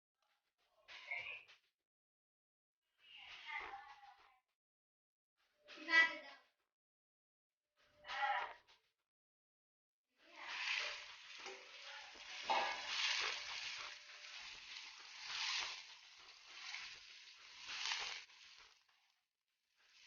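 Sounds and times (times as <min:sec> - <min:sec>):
food sizzling in a pan: 0:10.2 - 0:19.2, 0:19.8 - 0:20.0.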